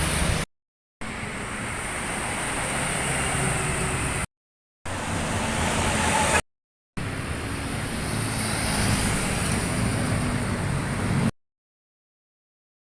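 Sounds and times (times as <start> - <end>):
bus engine rumble: 0.0 - 4.3, 7.0 - 11.3
road noise: 0.0 - 6.4, 7.0 - 11.4.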